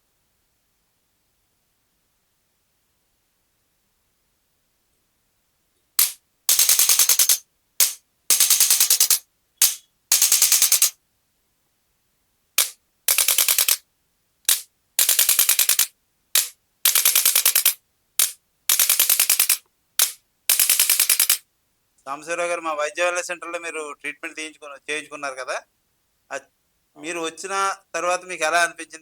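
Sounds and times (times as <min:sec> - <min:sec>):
adjusting instrument clicks: 0:06.0 - 0:10.9, 0:12.6 - 0:13.8, 0:14.5 - 0:21.4
rapid train of clicks: 0:06.0 - 0:10.9, 0:12.6 - 0:13.8, 0:14.5 - 0:21.4.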